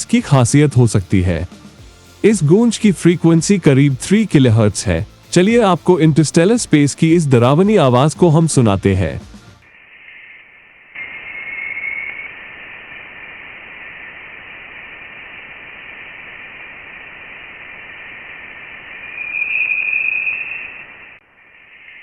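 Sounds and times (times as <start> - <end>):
eerie hiss: 9.7 - 22.0
thin whistling tone: 10.0 - 12.5, 19.0 - 22.0.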